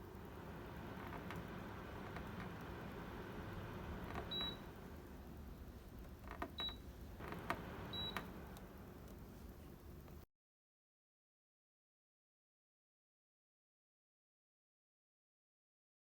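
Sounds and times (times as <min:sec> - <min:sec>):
air conditioner low hum: 0:00.0 - 0:10.2.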